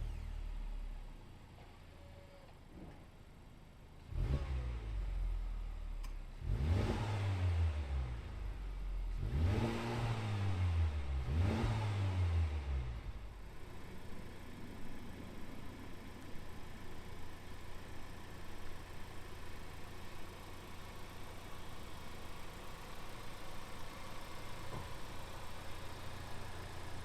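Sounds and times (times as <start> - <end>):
car engine revving: 4.1 - 5.4, 6.4 - 16.2
car engine idling: 12.8 - 27.0.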